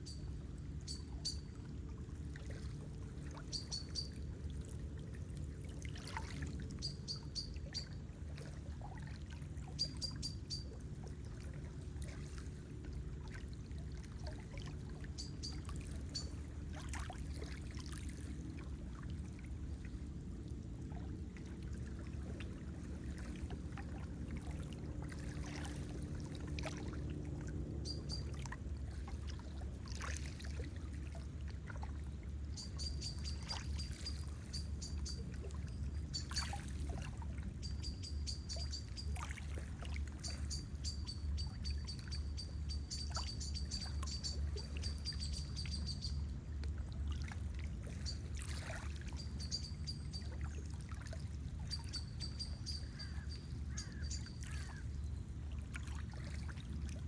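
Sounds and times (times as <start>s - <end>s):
water lapping and trickling: 0.0s - 57.0s
bird ticking trill: 40.5s - 46.2s, 51.7s - 54.8s.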